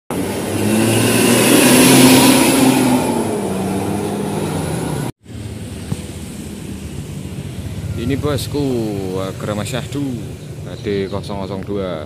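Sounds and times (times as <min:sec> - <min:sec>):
bus diesel engine revving: 0:00.1 - 0:05.1.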